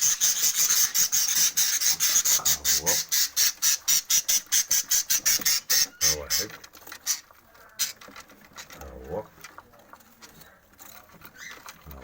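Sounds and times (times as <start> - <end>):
chicks squawking raspily: 0.0 - 8.2.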